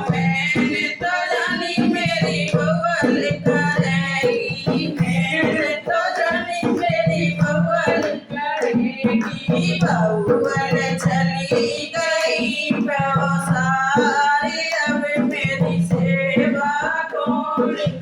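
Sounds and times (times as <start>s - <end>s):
person singing: 0.0s - 8.7s.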